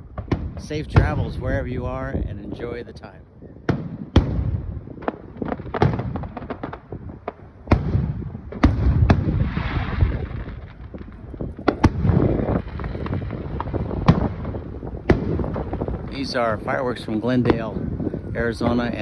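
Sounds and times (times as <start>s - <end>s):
fireworks bangs and booms: 0.0s - 19.0s
low rumble: 3.9s - 19.0s.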